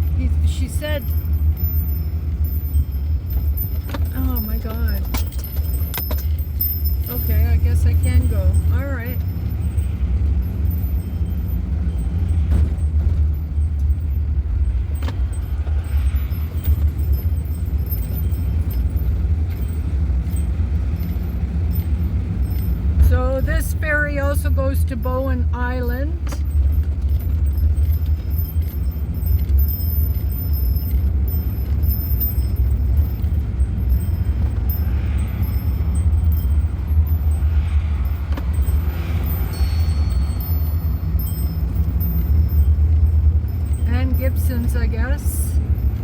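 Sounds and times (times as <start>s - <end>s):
road noise: 0.0s - 46.0s
van engine rumble: 0.0s - 46.0s.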